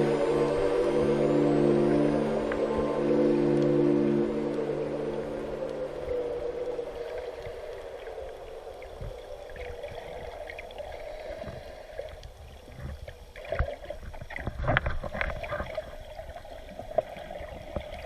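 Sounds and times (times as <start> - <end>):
steady hum: 0.0 - 13.1.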